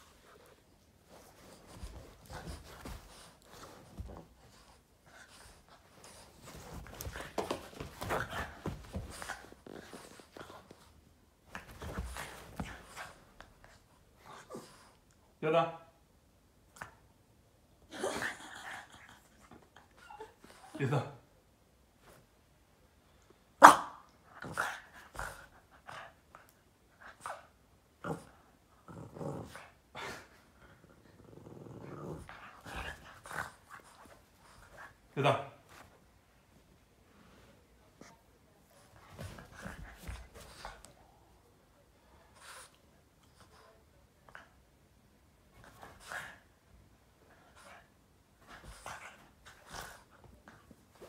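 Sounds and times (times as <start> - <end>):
dog growling in play: 28.0 - 33.6.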